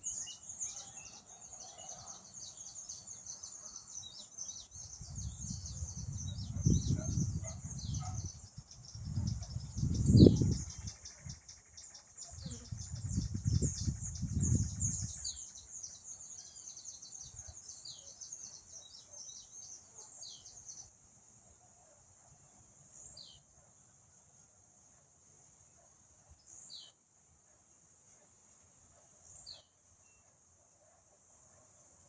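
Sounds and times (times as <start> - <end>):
birds chirping: 0.0 - 20.8.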